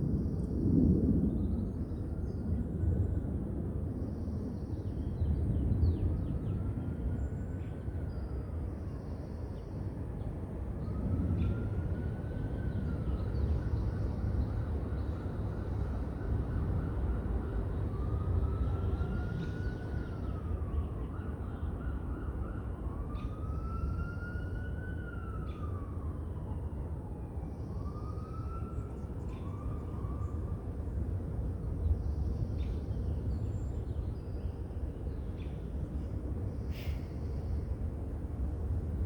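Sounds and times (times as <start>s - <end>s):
city noise rumble: 0.0s - 39.0s
wind: 0.0s - 39.0s
distant siren wailing: 10.3s - 31.9s.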